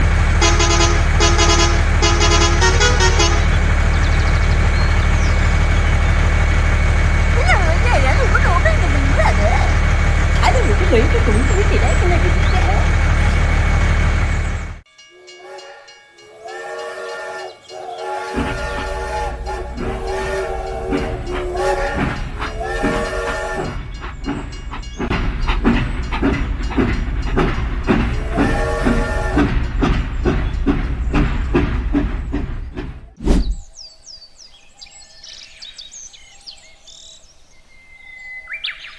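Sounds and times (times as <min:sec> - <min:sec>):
truck engine idling: 0:00.0 - 0:14.8, 0:17.6 - 0:33.2
truck horn tooting a tune: 0:00.4 - 0:03.7, 0:15.4 - 0:23.8
rhythmic thumping beat: 0:18.3 - 0:33.2.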